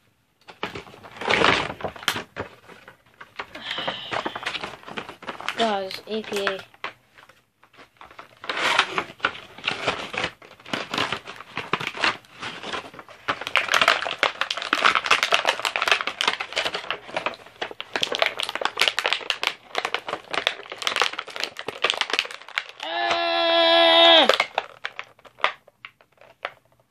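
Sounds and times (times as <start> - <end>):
packaging crinkling and rustling: 0.4 - 26.9.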